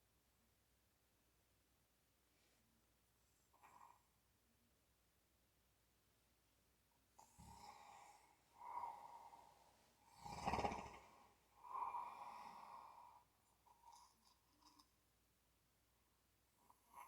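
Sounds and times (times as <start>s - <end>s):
quiet snoring of a sleeper: 3.3s - 4.4s, 7.1s - 15.0s, 16.5s - 17.0s.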